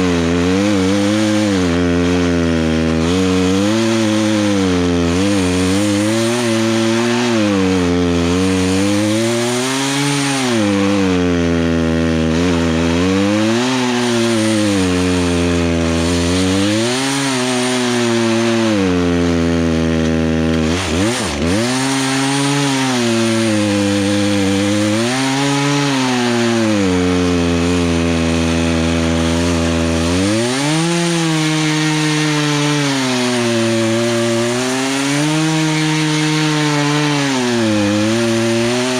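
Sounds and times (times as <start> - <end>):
chainsaw cutting through a log: 0.0 - 38.9.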